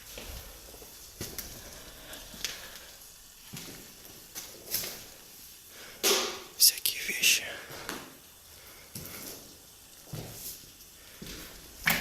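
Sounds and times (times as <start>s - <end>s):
debris crackling and rustling: 0.0s - 6.6s.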